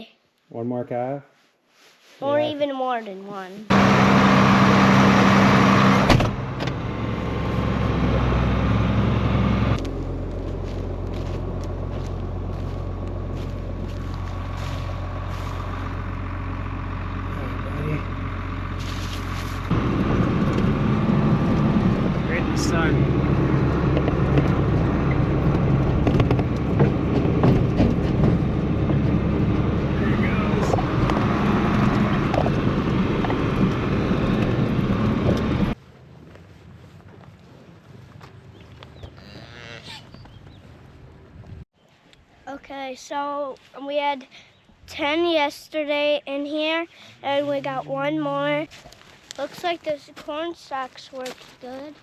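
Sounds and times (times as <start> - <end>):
low rumble: 3.7 - 35.8
vehicle engine idling: 3.7 - 35.8.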